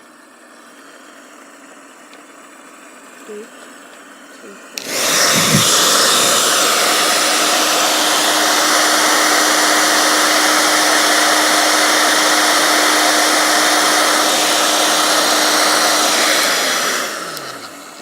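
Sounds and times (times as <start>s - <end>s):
hair dryer running: 4.6s - 18.0s.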